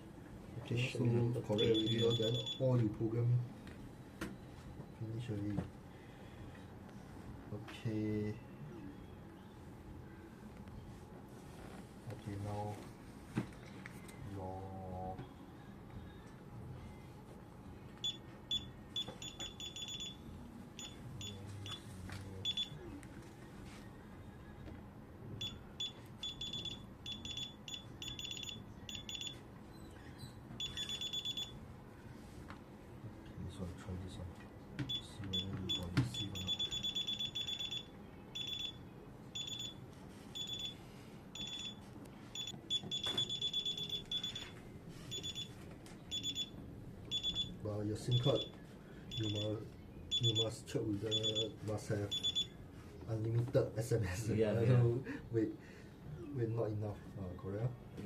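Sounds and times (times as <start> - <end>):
keypad beeps: 1.5 - 2.7, 18.0 - 20.2, 20.8 - 21.8, 22.4 - 22.8, 25.4 - 29.8, 30.6 - 31.6, 34.8 - 38.8, 39.4 - 39.8, 40.4 - 40.8, 41.4 - 41.8, 42.4 - 48.5, 49.1 - 49.5, 50.1 - 50.5, 51.1 - 52.5.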